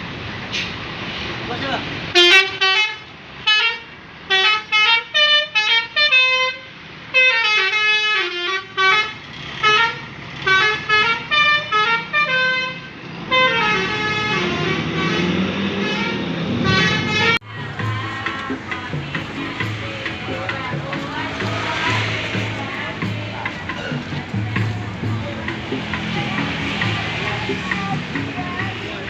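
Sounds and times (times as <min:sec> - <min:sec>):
vehicle engine rumble: 0:00.0 - 0:29.0
musical air horn toots: 0:02.2 - 0:24.6.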